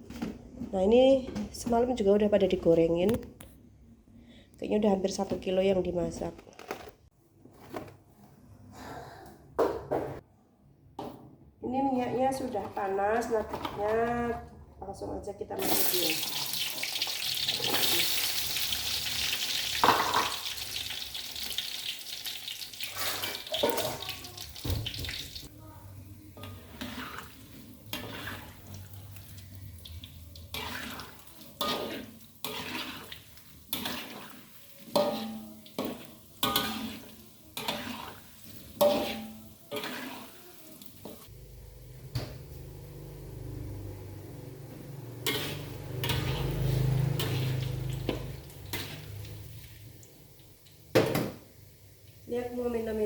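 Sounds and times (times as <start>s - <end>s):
dishes and utensils clinking: 22.8s - 25.4s, 30.5s - 41.3s, 45.2s - 49.2s.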